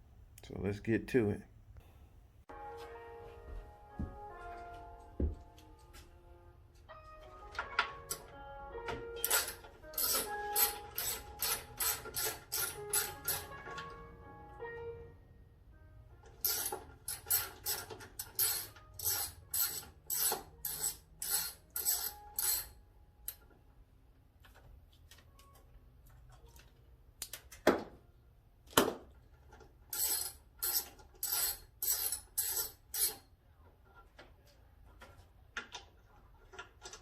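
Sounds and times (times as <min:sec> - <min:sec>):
ratchet wrench clicking: 0:09.2 - 0:13.5, 0:16.4 - 0:22.7, 0:29.9 - 0:33.2.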